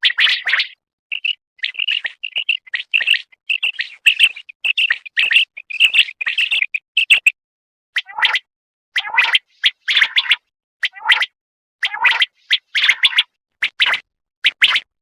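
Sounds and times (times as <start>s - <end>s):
quail chirping: 0.0s - 7.3s.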